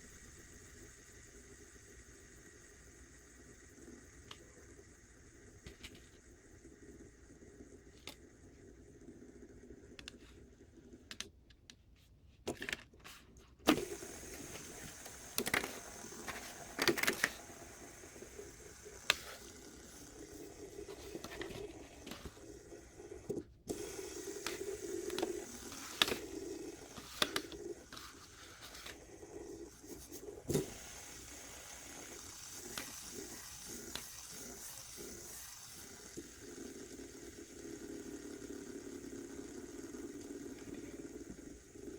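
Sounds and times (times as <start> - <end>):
fidget spinner whirring: 0.0 - 11.3, 13.6 - 41.9
fidget spinner clicks and knocks: 13.6 - 29.1, 29.9 - 37.3.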